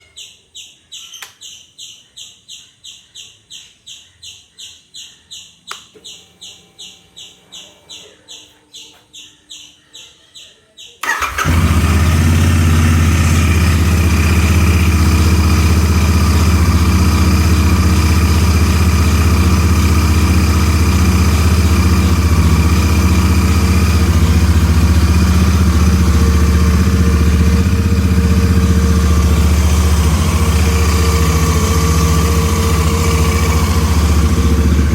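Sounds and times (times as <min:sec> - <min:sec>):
engine howling: 0:11.0 - 0:34.9
motorcycle engine starting and idling: 0:11.0 - 0:34.9.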